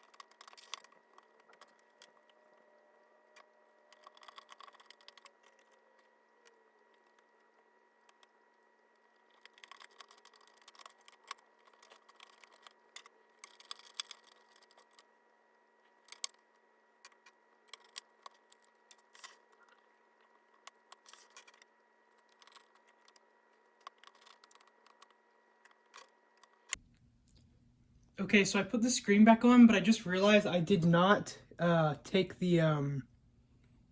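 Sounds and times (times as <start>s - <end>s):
laptop parts clicking and scraping: 0.0s - 26.8s.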